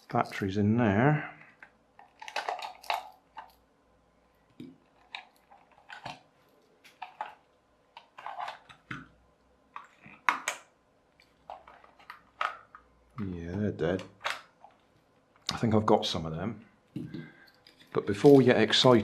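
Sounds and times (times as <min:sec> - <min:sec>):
batteries clicking in plastic compartment: 0:01.5 - 0:03.6.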